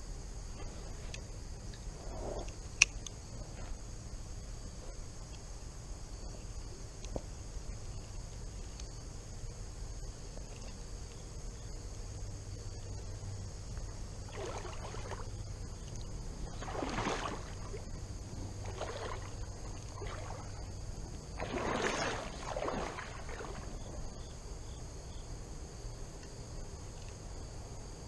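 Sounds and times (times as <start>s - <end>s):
water sloshing in creek: 10.3s - 24.8s.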